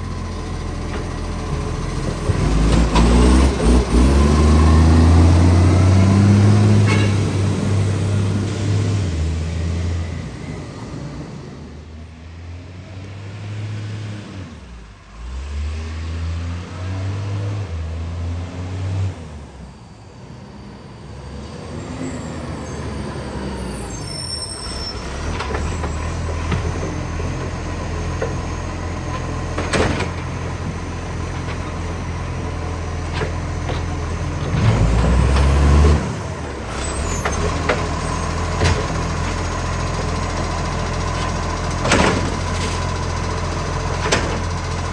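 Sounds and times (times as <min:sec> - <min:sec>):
truck engine with exhaust leak: 0:00.0 - 0:11.0, 0:20.2 - 0:44.9.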